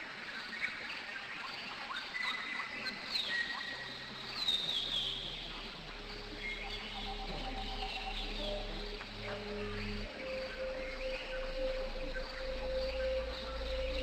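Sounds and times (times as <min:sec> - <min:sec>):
low steady hum: 0:05.2 - 0:14.0.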